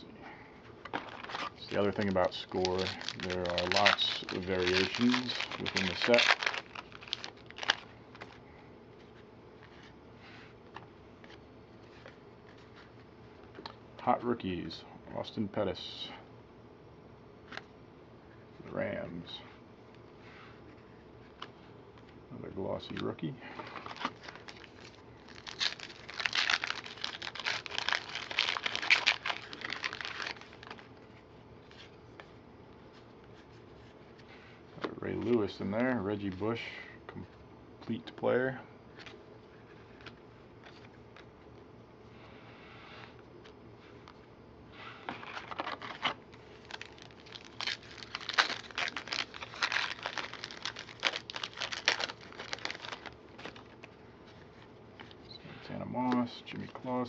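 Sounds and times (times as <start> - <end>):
cards being handled: 0.8 - 8.4, 22.8 - 36.4, 45.0 - 55.2
wrapper tearing and crinkling: 0.9 - 8.4, 23.8 - 30.9, 45.2 - 53.9.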